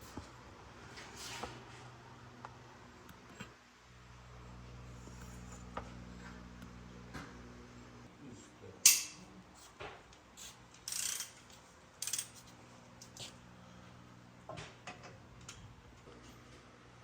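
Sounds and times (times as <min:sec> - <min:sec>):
ratchet wrench rasping: 0:10.9 - 0:11.4, 0:12.0 - 0:12.4.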